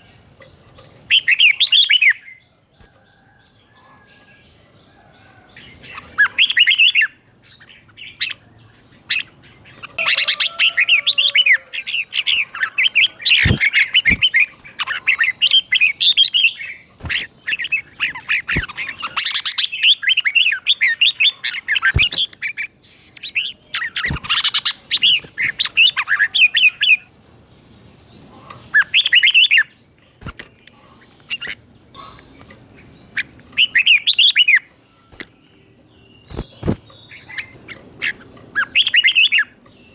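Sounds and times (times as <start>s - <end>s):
bird whistled song: 1.1s - 2.4s, 5.9s - 8.4s, 9.0s - 27.1s, 28.2s - 29.8s, 33.0s - 35.4s, 36.2s - 39.9s.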